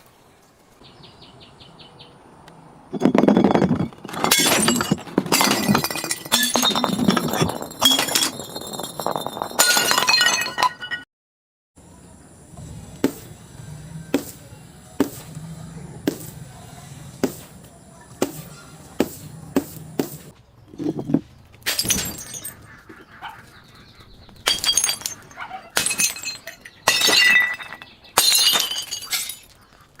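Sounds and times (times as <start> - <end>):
glass breaking and crunching: 2.9 - 11.0, 21.6 - 22.7, 24.4 - 29.7.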